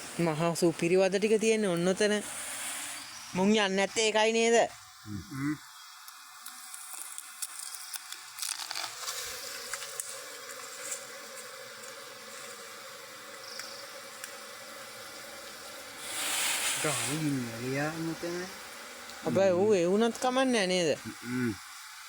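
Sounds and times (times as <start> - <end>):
bees buzzing: 0.0 - 22.0.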